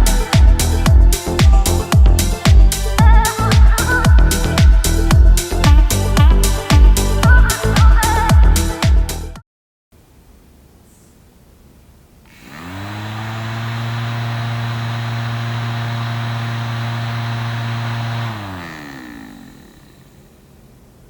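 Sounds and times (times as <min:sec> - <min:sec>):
small electric fan humming: 0:10.0 - 0:21.0.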